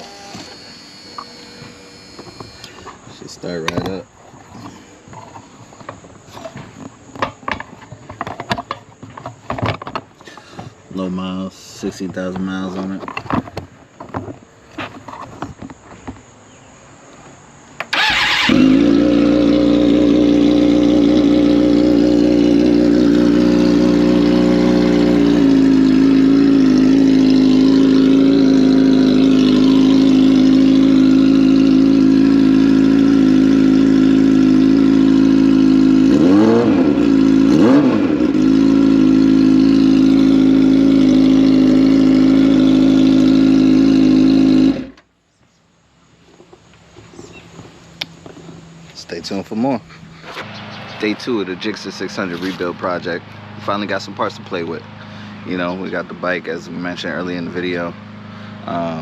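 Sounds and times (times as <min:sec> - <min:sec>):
motorcycle engine idling: 0:17.9 - 0:45.0.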